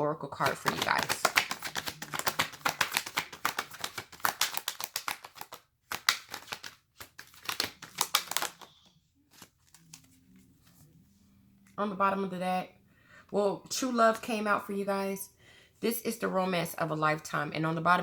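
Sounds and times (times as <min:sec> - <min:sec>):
cards being shuffled by hand: 0:00.4 - 0:10.8.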